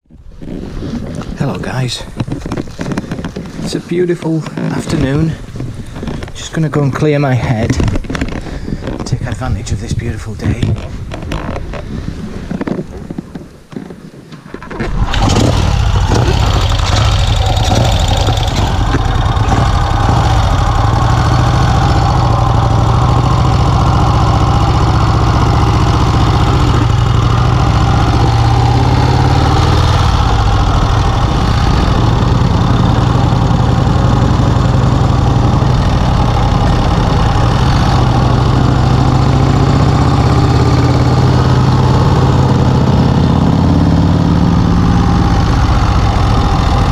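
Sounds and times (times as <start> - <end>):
motorcycle engine starting and idling: 14.6 - 46.9.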